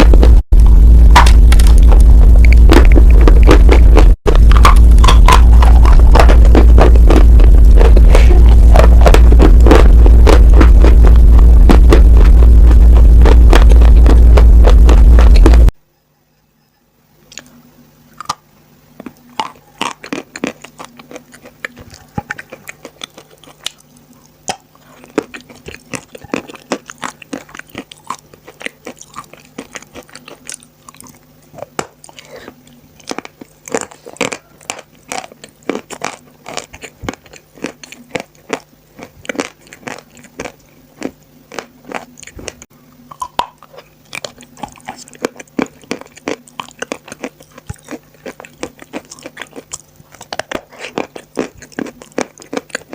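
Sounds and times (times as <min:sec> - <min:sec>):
chewing crunchy chalk: 0:19.0 - 0:52.9.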